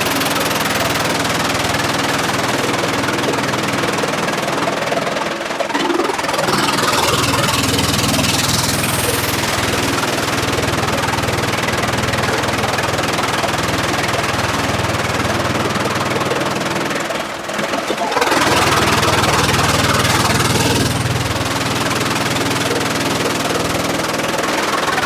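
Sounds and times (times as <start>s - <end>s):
sawmill machinery humming: 0.0s - 25.0s.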